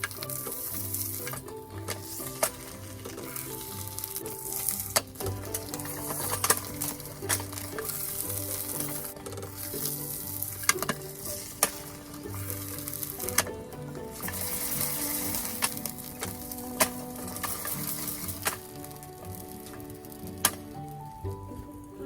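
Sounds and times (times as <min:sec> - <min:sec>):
food sizzling in a pan: 0:09.8 - 0:20.0.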